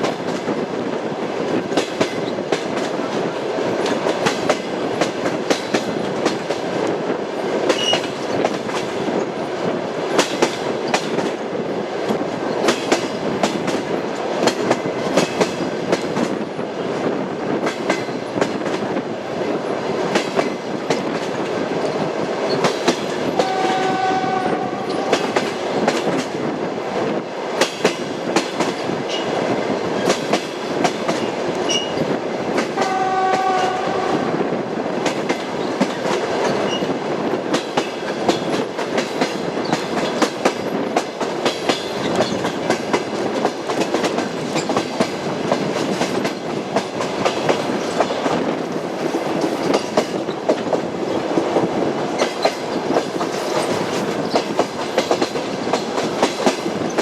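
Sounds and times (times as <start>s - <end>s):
train wheels clattering over rails: 0.0s - 57.0s
horn-like tone: 23.4s - 25.2s.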